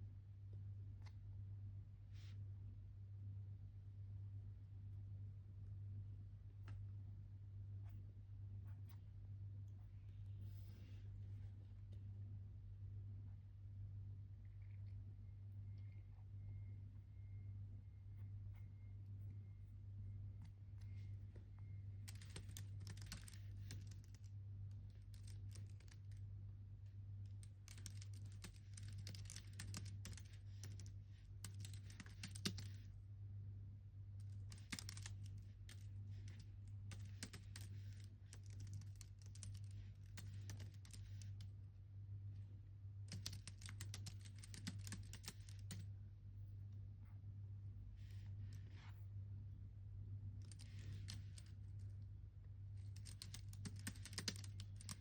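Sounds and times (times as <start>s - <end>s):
low hum: 0.0s - 55.0s
computer keyboard typing: 22.0s - 26.2s, 27.3s - 32.9s, 34.2s - 41.4s, 43.1s - 45.8s, 52.8s - 55.0s.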